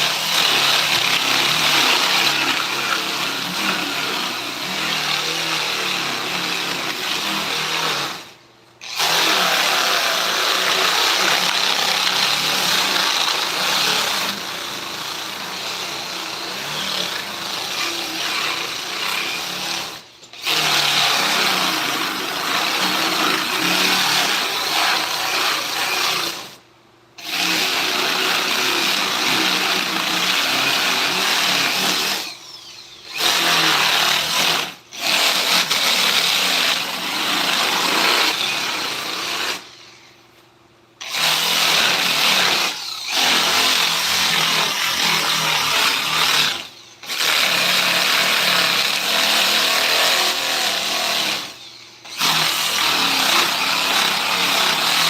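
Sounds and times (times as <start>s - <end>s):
power tool buzzing on wood: 0.0s - 26.6s, 41.0s - 55.0s.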